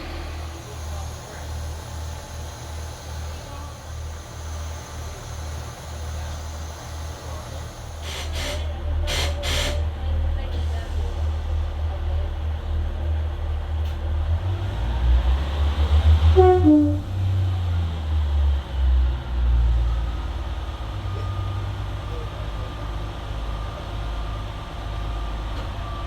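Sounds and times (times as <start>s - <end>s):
diesel train engine throbbing: 0.0s - 26.0s
two-note train horn: 16.3s - 17.4s.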